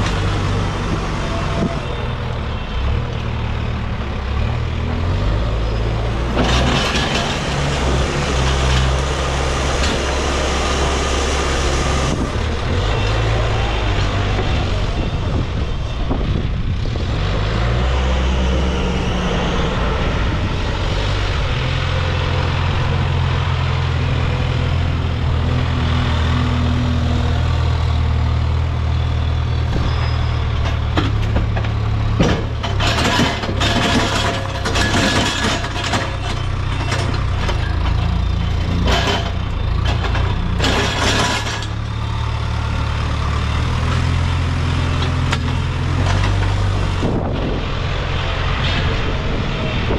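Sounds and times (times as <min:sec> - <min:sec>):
diesel engine running under load: 0:00.0 - 0:49.9
clanks and knocks: 0:30.6 - 0:41.8.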